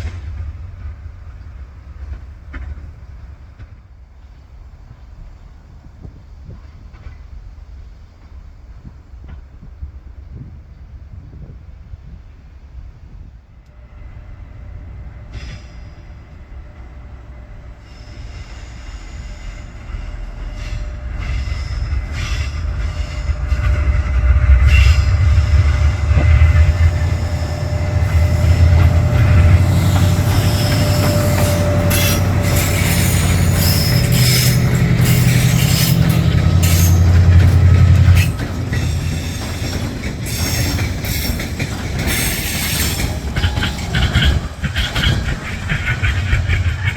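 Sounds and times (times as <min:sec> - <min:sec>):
train engine drone: 0:00.0 - 0:46.9
wheels squealing on rails: 0:13.8 - 0:46.9
wheels clicking over rail joints: 0:26.0 - 0:46.9.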